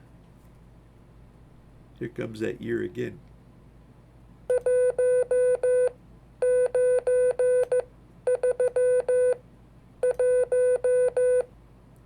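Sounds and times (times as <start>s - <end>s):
morse code beeping: 4.5s - 9.4s, 10.1s - 11.4s.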